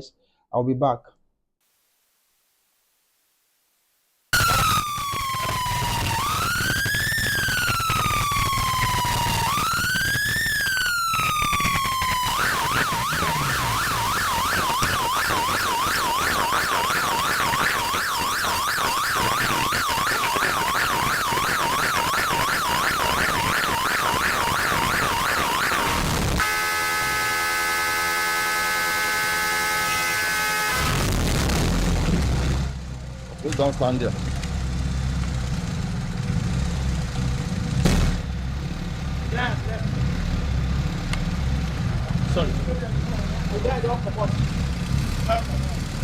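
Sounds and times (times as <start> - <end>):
siren fast yelp: 4.4 - 31.0
siren wailing: 4.4 - 31.1.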